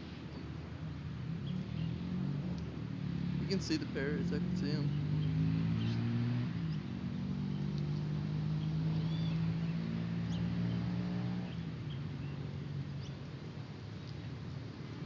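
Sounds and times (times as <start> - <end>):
low engine drone: 0.0 - 15.0
faint high bird chirps: 8.6 - 10.8.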